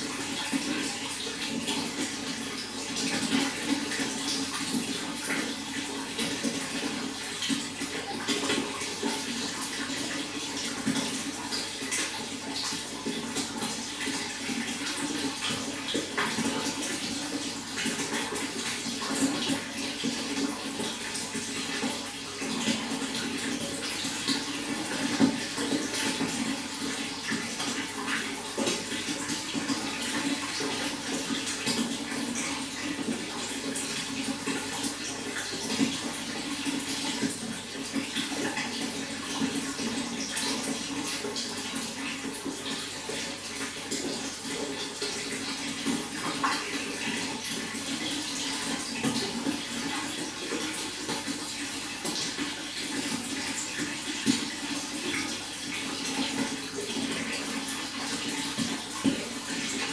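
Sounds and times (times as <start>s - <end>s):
running water splashing: 0.0s - 59.9s.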